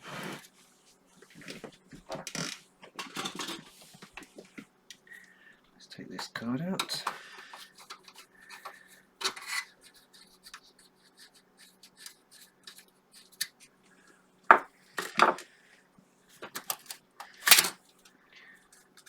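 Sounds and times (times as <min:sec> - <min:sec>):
small clicks and scrapes: 0:06.8 - 0:13.8, 0:16.4 - 0:19.0.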